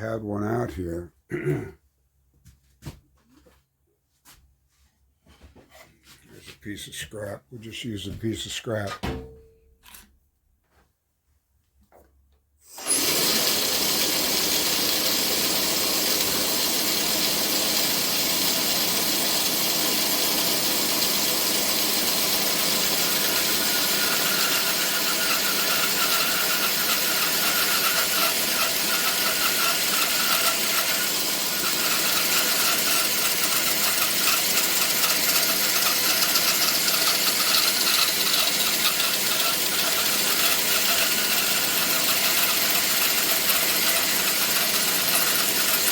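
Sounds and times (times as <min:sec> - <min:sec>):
band saw cutting wood: 0:12.7 - 0:45.9
saw blade whine: 0:12.7 - 0:45.9.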